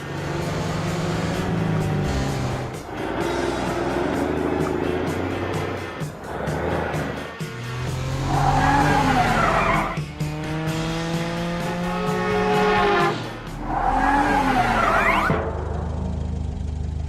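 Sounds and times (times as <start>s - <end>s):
background music: 0.0s - 17.0s
tyres screeching: 1.0s - 10.0s, 12.5s - 15.4s.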